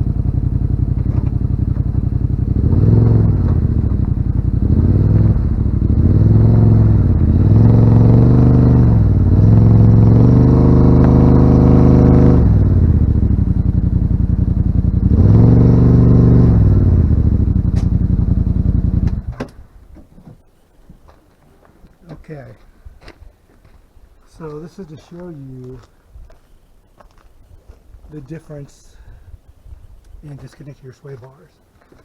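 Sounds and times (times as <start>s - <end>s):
vehicle engine revving: 0.0s - 19.4s.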